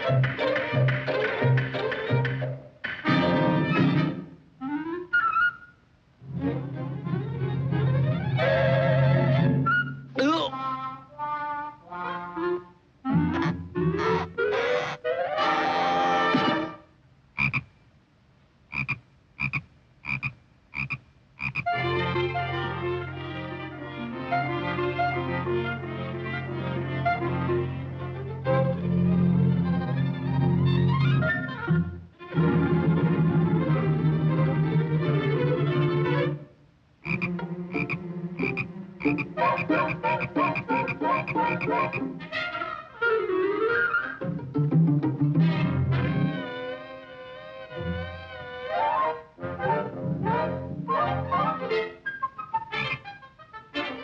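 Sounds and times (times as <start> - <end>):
cartoon orchestral music with brass: 0.0 - 16.9, 21.7 - 36.4, 37.1 - 54.0
cartoon croaks: 17.4 - 17.7, 18.7 - 21.7, 37.0 - 42.1, 52.6 - 53.2
short repeated calls: 17.4 - 17.8, 18.7 - 21.7, 37.0 - 42.0
orchestral music: 37.2 - 42.8.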